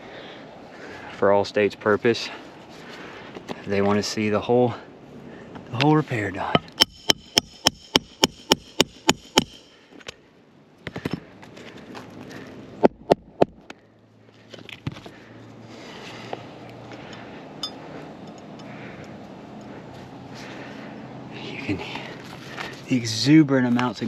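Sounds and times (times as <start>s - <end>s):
hammer driving nails: 6.6s - 10.2s.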